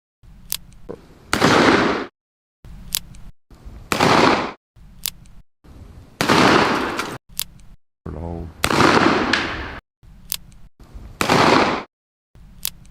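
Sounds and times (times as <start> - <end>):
revolver gunshots: 1.3 - 2.1, 3.9 - 4.6, 6.2 - 7.2, 8.6 - 9.8, 11.2 - 11.9.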